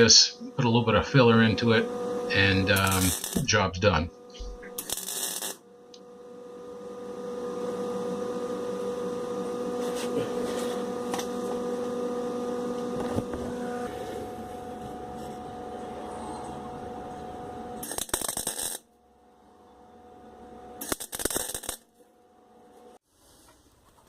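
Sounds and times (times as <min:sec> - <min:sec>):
steady machine hum: 0:00.0 - 0:23.0.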